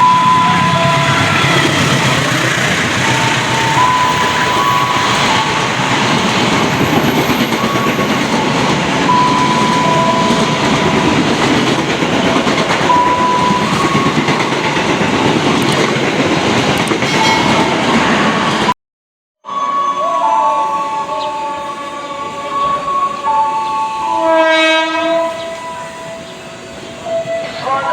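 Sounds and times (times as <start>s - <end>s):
high whining tones: 0.0s - 14.8s
train wheels rumbling on rails: 0.0s - 18.7s.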